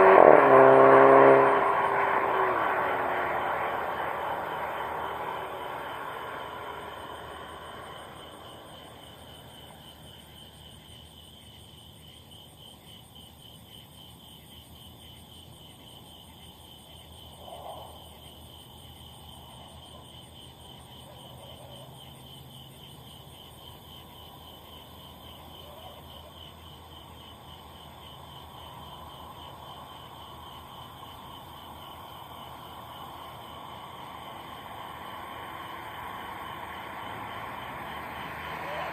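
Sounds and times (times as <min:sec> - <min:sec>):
car engine: 0:00.0 - 0:10.6, 0:28.7 - 0:38.9
road noise: 0:00.0 - 0:38.9.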